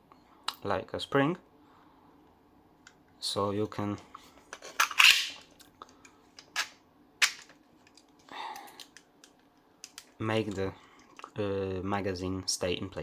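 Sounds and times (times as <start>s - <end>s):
plastic pistol parts clicking: 4.8s - 10.1s.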